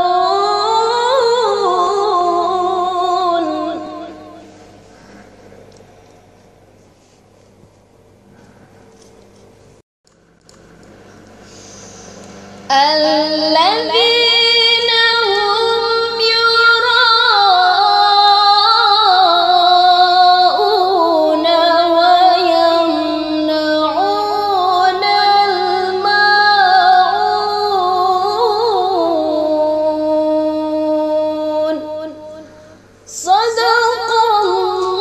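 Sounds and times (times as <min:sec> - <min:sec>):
person chanting melodic recitation: 0:00.0 - 0:04.6, 0:12.7 - 0:35.0.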